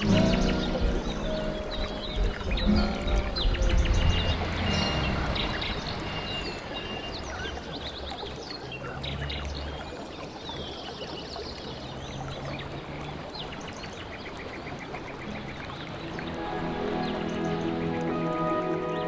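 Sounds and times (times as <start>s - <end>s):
bird trill: 0.0s - 7.9s
birds chirping: 0.0s - 19.0s
stream water running: 0.0s - 19.0s.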